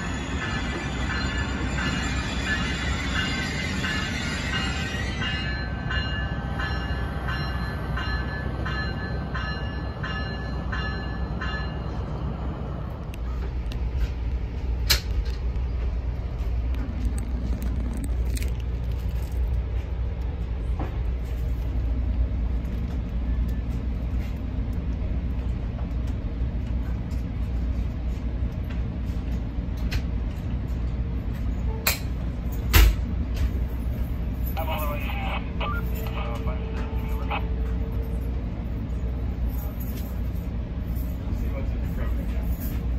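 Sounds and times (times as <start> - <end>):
train bell ringing: 0.0 - 12.3, 33.6 - 42.9
train low rumble: 0.0 - 42.9.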